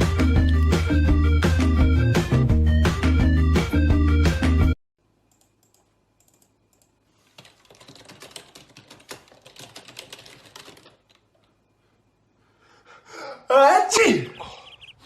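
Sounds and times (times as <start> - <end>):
rapid short clicks and taps: 5.4 - 11.2.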